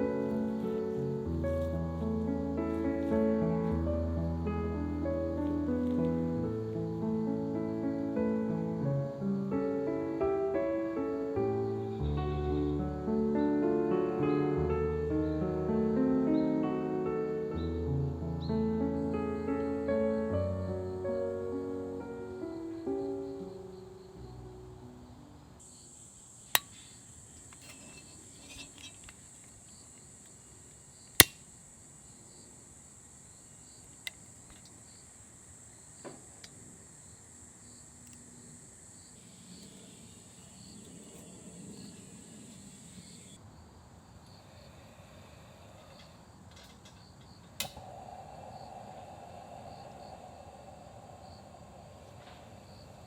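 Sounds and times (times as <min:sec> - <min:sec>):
grass insects chirping: 0:18.5 - 0:53.0.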